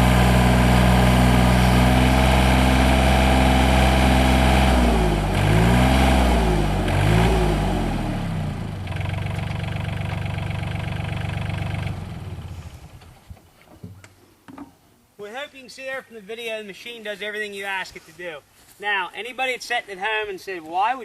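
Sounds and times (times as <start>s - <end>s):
diesel engine running: 0.0s - 13.1s.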